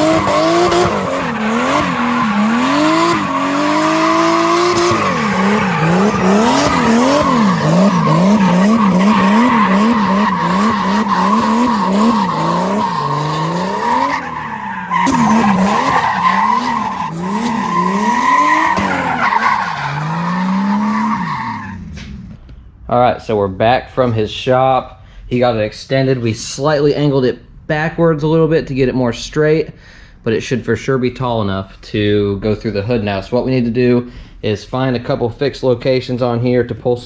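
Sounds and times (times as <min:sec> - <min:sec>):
tyres squealing: 0:00.0 - 0:22.0
car engine revving: 0:00.0 - 0:22.4.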